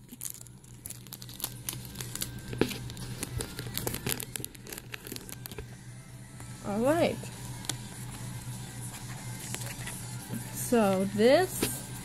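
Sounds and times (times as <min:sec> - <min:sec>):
plastic packaging crinkling: 0:00.0 - 0:05.7.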